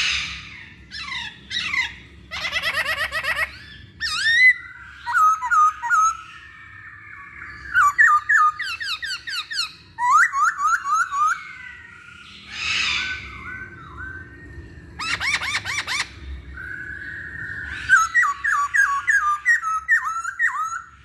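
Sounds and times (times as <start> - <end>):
bird singing whistled notes: 0.0 - 21.0.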